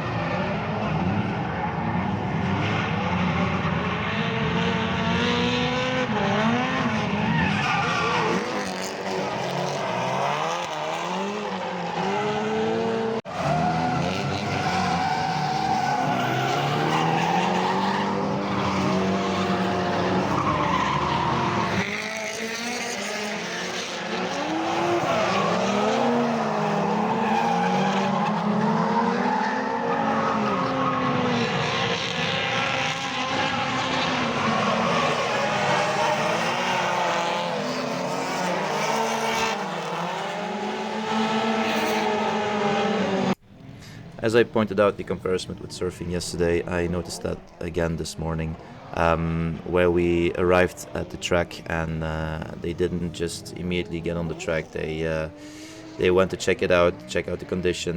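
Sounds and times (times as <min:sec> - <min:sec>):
car engines revving: 0:00.0 - 0:57.9
tyres skidding: 0:00.0 - 0:57.9.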